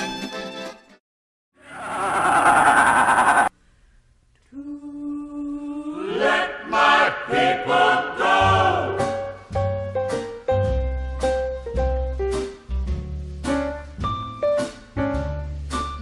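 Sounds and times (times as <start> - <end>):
choir singing: 5.6 - 9.2
deep bass notes: 9.4 - 14.4.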